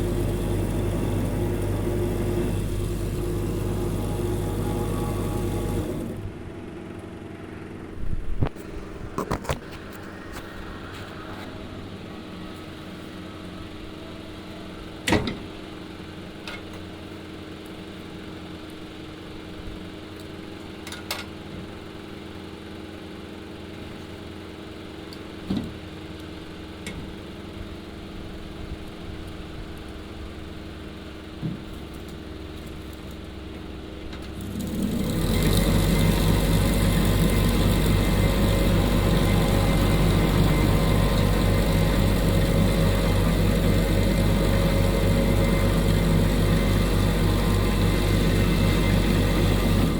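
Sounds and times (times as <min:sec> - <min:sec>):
steady low hum: 0:00.0 - 0:16.4.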